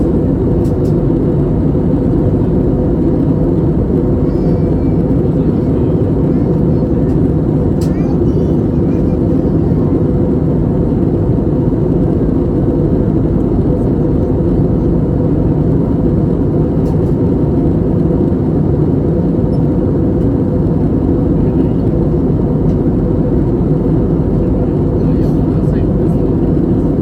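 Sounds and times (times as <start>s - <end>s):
airplane cabin engine rumble: 0.0s - 27.0s.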